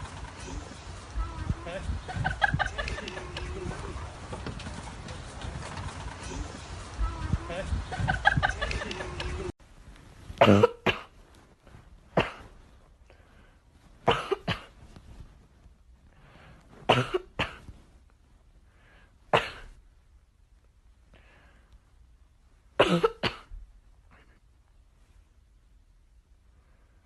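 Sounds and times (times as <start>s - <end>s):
short sharp coughs: 10.4s - 11.1s, 12.2s - 12.6s, 14.1s - 14.8s, 16.9s - 17.7s, 22.8s - 23.6s.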